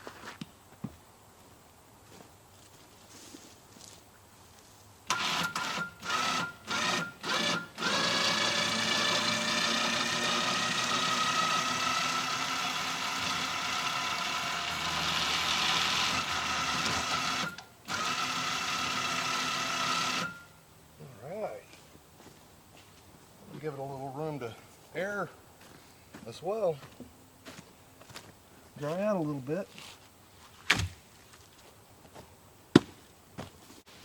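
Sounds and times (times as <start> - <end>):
motor running with a whine: 5.1 - 20.5.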